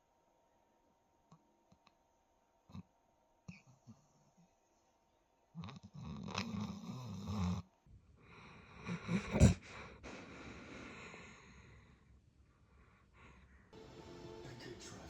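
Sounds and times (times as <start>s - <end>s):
dog snoring: 5.6s - 7.7s, 8.4s - 11.8s.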